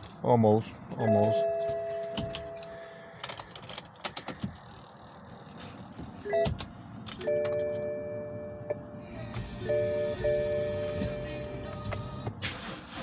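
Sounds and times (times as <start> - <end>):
dashboard warning chimes: 0.9 - 3.1, 6.2 - 12.2.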